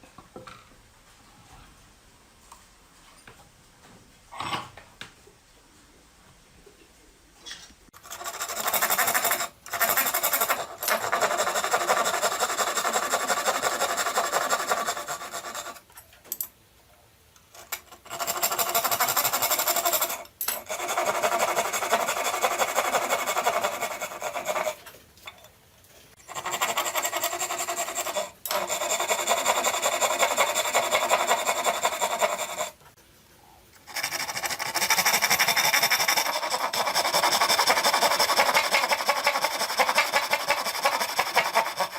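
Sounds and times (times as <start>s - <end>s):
hand tool scraping wood: 8.0s - 15.8s, 17.6s - 24.9s, 26.3s - 32.9s, 33.9s - 41.9s.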